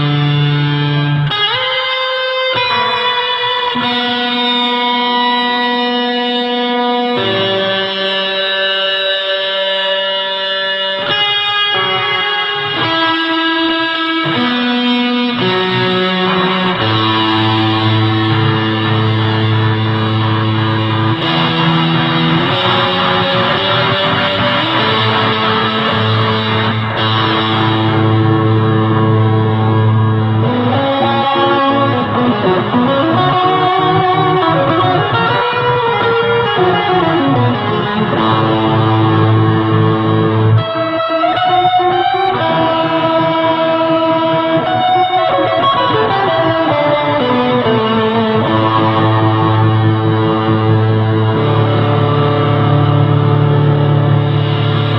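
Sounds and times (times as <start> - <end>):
electric guitar with fuzz and reverb: 0.0 - 54.9.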